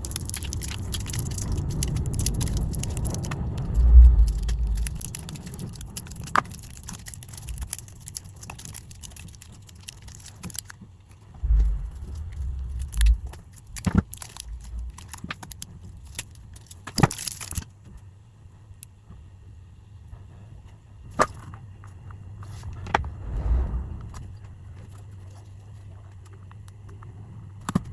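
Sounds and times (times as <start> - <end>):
low bumps: 0.0 - 6.0, 11.3 - 16.2, 21.9 - 25.4
small parts clicking and rattling: 0.0 - 17.7.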